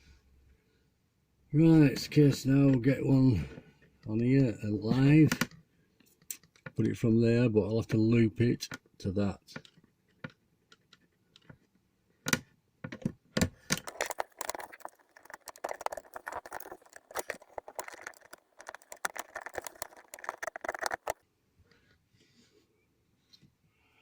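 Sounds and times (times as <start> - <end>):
clicks and rattles of wiring: 13.8 - 21.2.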